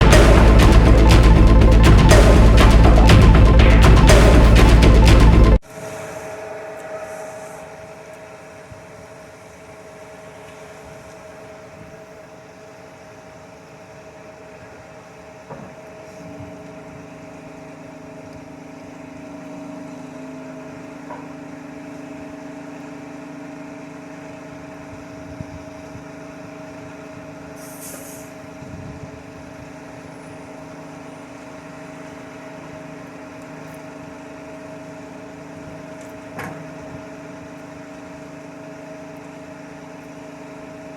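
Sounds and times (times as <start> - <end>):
diesel engine running: 0.0 - 5.6
low steady tone: 0.0 - 11.6
air hiss: 5.6 - 9.4, 27.6 - 28.4.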